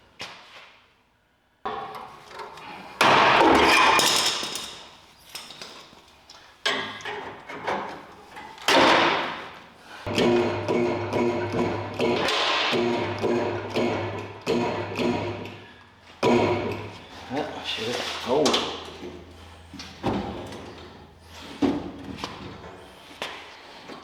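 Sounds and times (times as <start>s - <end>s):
loud metal bangs: 3.0s - 4.5s, 10.1s - 15.4s.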